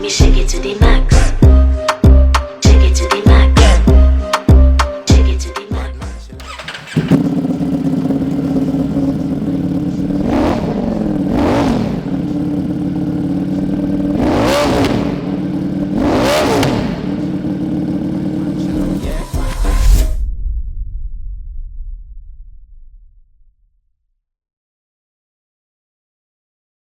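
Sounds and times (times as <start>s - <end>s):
motorcycle engine idling: 2.7s - 19.8s
motorcycle throttle blips: 6.4s - 19.6s.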